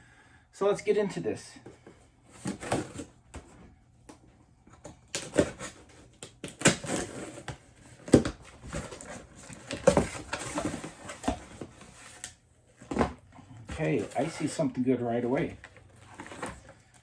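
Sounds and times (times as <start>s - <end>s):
cardboard box rustling: 1.7s - 3.8s, 4.9s - 17.0s.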